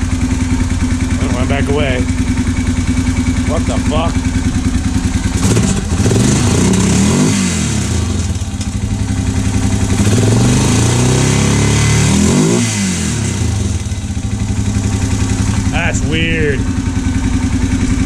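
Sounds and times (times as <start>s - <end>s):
engine knock: 0.0s - 7.1s, 16.6s - 18.0s
motorcycle engine revving: 0.0s - 18.0s.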